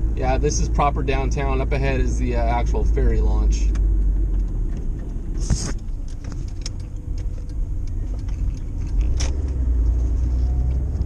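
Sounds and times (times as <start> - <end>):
car engine and tyres rumbling: 0.0 - 11.0
light ticks and clicks: 3.6 - 10.0.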